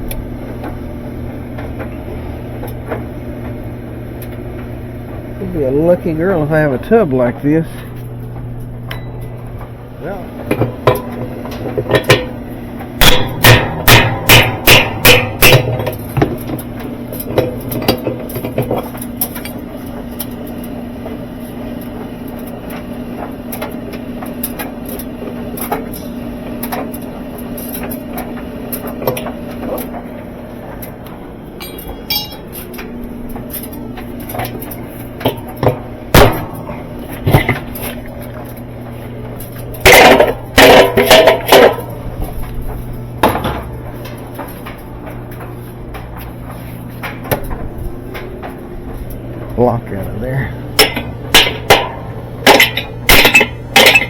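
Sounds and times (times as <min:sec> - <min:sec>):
steady low hum: 0:00.0 - 0:54.0
hammer strikes: 0:13.0 - 0:15.9, 0:31.6 - 0:32.5.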